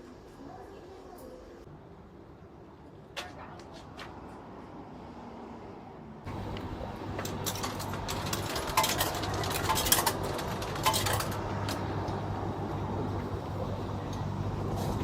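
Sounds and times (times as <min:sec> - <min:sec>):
vending machine humming: 0:06.3 - 0:15.0
sharp metallic clinks and clicks: 0:07.2 - 0:11.8.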